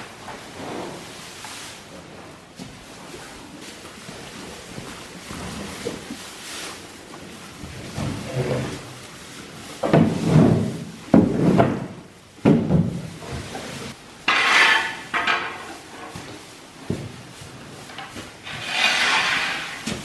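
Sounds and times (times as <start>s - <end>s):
scraping and rubbing strokes: 13.6s - 16.5s, 17.9s - 20.0s.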